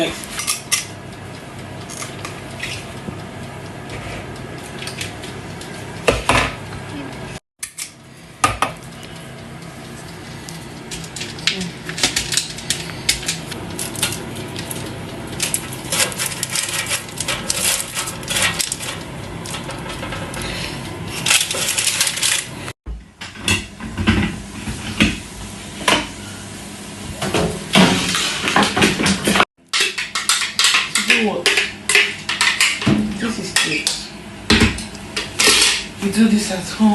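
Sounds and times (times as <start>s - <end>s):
kitchen background: 0.0s - 36.9s.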